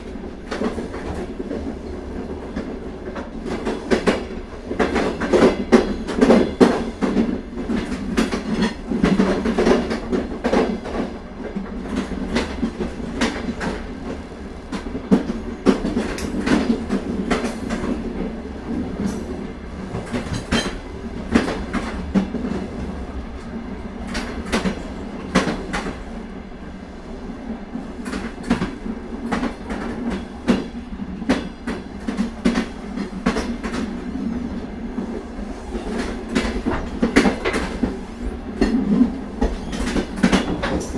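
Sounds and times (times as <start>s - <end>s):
train carriage rumble: 0.0s - 40.9s
wheels clacking over rail joints: 14.8s - 22.8s, 35.7s - 40.9s.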